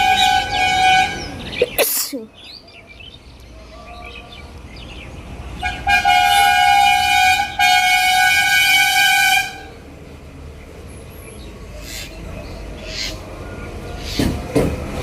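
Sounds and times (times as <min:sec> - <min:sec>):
horn blasts: 0:00.0 - 0:01.4, 0:05.6 - 0:09.8.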